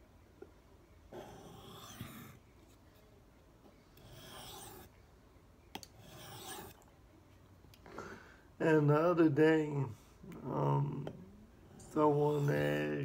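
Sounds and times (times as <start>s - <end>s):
knife rasping on sharpening stone: 1.2s - 2.4s, 4.0s - 4.9s, 6.0s - 6.8s.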